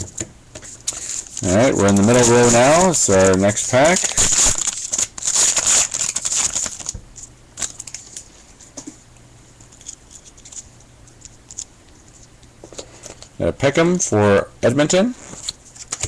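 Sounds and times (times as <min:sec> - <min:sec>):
card pack wrapper tearing: 0:00.9 - 0:07.0, 0:07.6 - 0:08.3.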